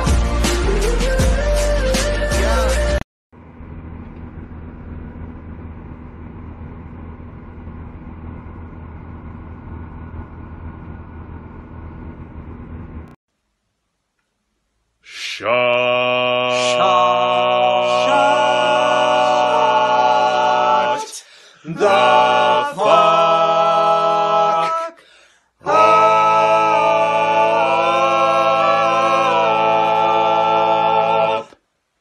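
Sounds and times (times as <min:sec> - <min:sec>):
voices singing a cappella: 0:00.0 - 0:03.0, 0:15.1 - 0:31.6.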